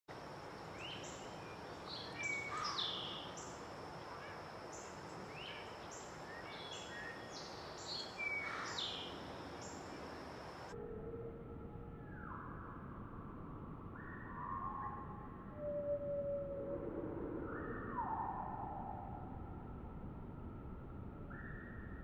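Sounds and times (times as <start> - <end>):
steady outdoor hiss: 0.1 - 10.8
songbirds chirping and whistling: 0.8 - 3.6, 4.2 - 10.1.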